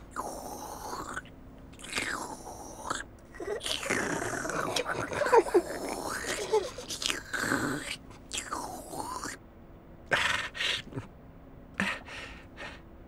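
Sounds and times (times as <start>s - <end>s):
wordless vocal glide: 0.0s - 9.4s.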